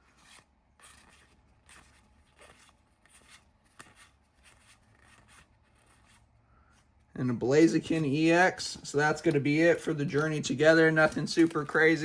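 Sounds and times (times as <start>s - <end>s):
trading cards being flipped: 0.1s - 6.3s, 8.9s - 12.0s.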